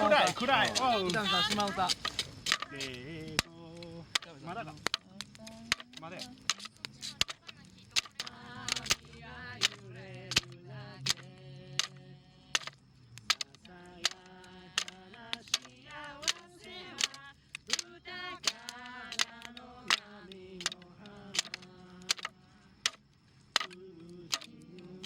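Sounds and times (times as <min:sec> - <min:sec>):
sharp rhythmic claps: 0:00.0 - 0:23.0, 0:23.6 - 0:25.0
person singing: 0:04.8 - 0:12.7, 0:13.4 - 0:22.6, 0:23.6 - 0:25.0.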